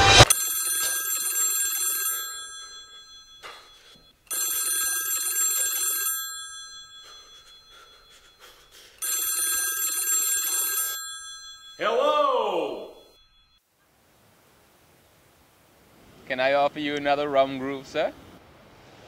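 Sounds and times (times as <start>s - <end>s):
telephone ringing: 0.2s - 13.6s.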